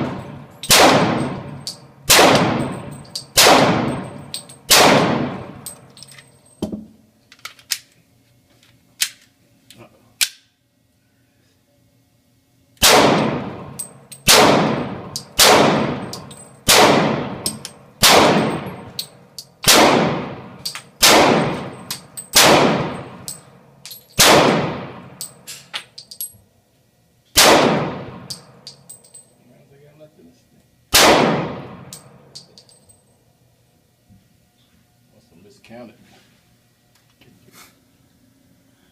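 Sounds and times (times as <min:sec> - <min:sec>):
echoing gunshots: 0:00.0 - 0:05.6, 0:12.8 - 0:19.0, 0:19.6 - 0:23.3, 0:24.2 - 0:25.2, 0:27.4 - 0:28.5, 0:30.9 - 0:32.0.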